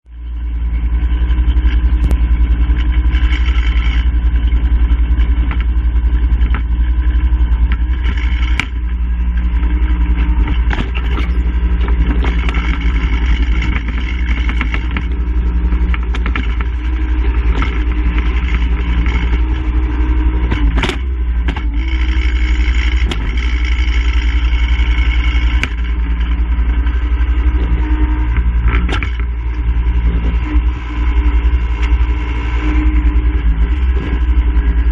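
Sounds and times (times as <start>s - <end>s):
engine running: 0.0s - 34.9s
sharp clanks: 10.1s - 19.8s.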